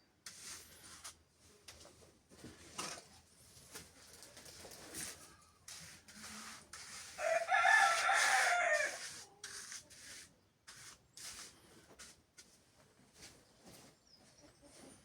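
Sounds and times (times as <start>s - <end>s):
rooster crowing: 7.2s - 9.1s.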